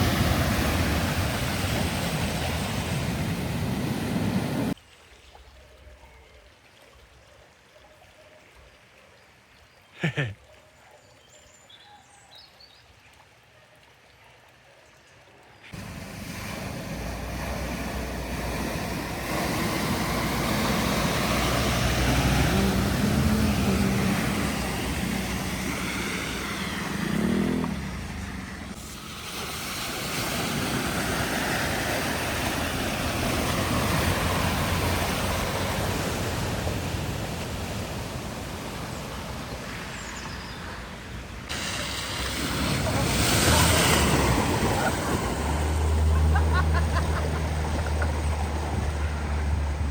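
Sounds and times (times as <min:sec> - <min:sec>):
engine rumble: 0:00.0 - 0:04.8, 0:15.8 - 0:49.9
water rushing and splashing: 0:00.0 - 0:07.3, 0:15.7 - 0:49.9.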